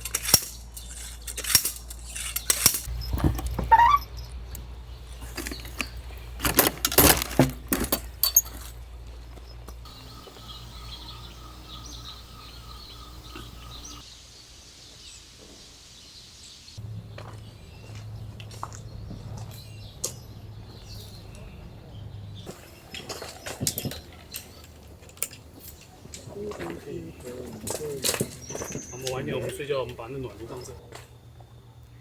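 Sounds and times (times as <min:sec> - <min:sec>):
camping gear knocks and clinks: 0:00.0 - 0:09.9, 0:22.4 - 0:26.8, 0:27.4 - 0:29.1
faint bird chirps: 0:02.9 - 0:05.9.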